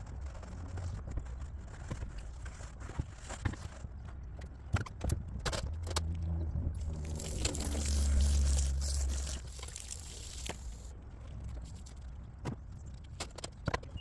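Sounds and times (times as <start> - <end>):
water pouring on metal roof: 6.8 - 10.9.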